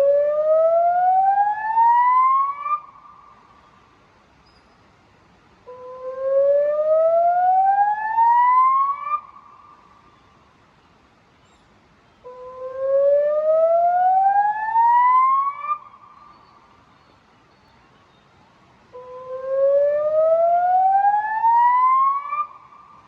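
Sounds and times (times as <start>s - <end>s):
rising warning siren sweeps: 0.0s - 2.9s, 5.7s - 9.4s, 12.3s - 16.0s, 18.9s - 22.8s.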